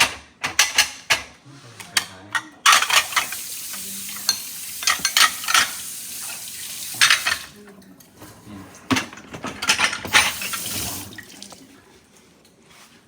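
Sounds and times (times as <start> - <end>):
dishes and utensils clattering: 0.0 - 12.5.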